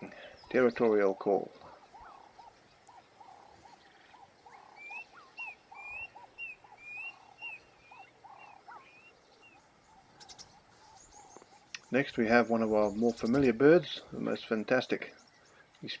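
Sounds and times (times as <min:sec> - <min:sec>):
lower repeated animal call: 0:00.0 - 0:11.7
cuckoo whistled call: 0:01.9 - 0:11.1.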